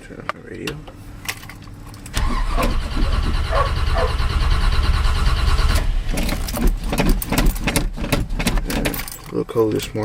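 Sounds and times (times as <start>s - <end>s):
engine cranking on starter: 2.1s - 9.0s
sharp clicks and knocks: 5.8s - 9.4s.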